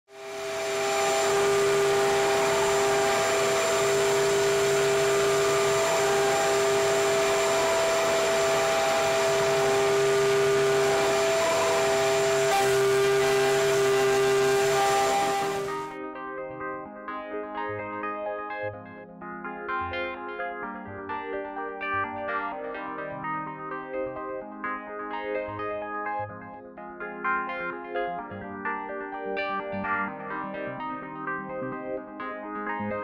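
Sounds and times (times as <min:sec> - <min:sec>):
router motor whine: 0:00.1 - 0:15.9.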